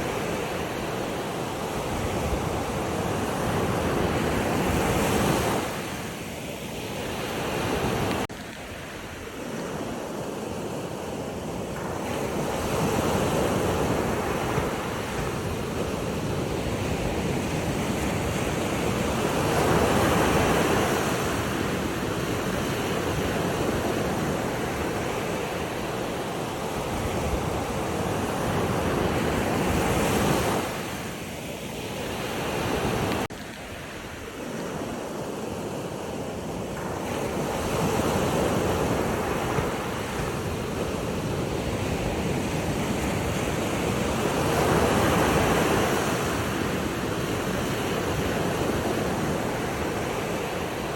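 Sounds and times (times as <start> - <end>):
wind: 0.0 - 50.9.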